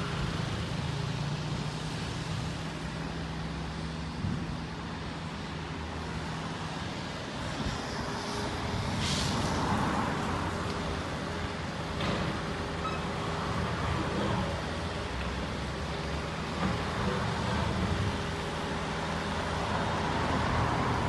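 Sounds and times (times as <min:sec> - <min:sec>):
engines and road traffic: 0:00.0 - 0:21.0
short hiss: 0:09.0 - 0:09.6.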